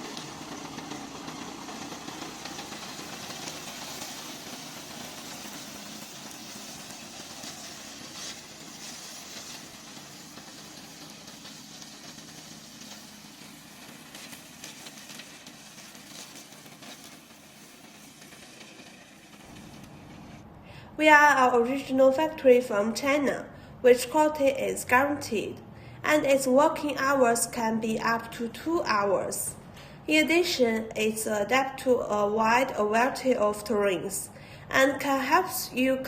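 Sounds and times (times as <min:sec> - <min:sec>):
mower petrol engine running: 0:00.0 - 0:20.4.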